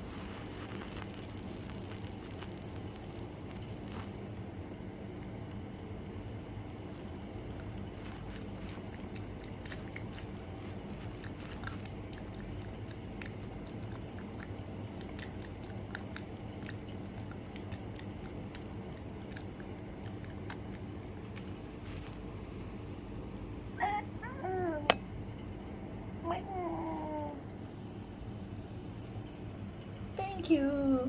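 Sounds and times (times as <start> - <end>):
cat lapping water: 0.2 - 22.4.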